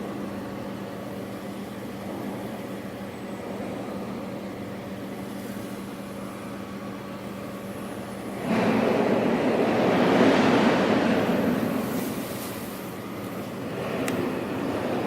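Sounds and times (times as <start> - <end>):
diesel generator running: 0.0 - 15.0
rough rushing noise: 8.3 - 13.0.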